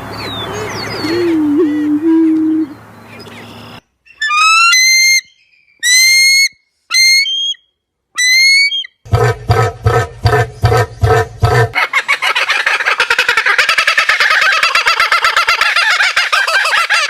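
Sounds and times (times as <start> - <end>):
whistled bird calls: 0.2 - 9.0.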